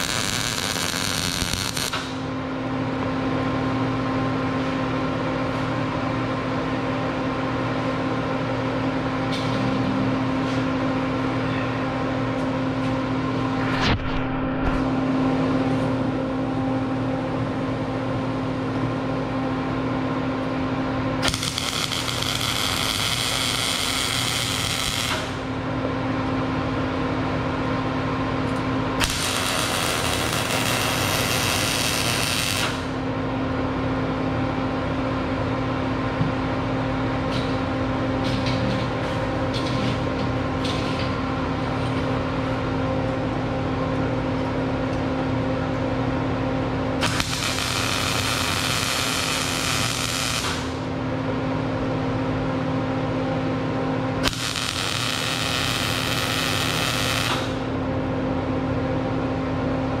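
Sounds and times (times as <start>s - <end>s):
welder humming: 0.0s - 2.3s, 21.2s - 25.6s, 28.5s - 33.1s, 47.0s - 50.9s, 54.2s - 57.7s
welding arc crackle: 0.0s - 2.3s, 21.2s - 25.5s, 29.0s - 33.0s, 47.0s - 50.9s, 54.2s - 57.7s.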